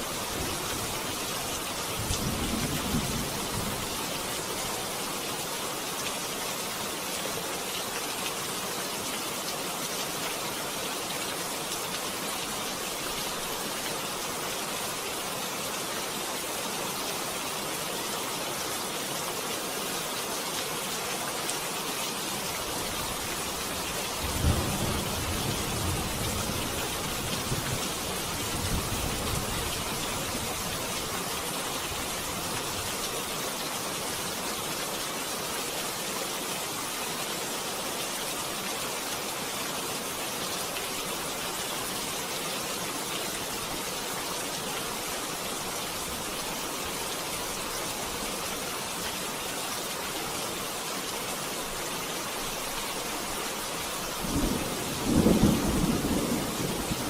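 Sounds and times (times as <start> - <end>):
steady rain falling: 0.0 - 57.0
distant thunder rumble: 54.3 - 57.0.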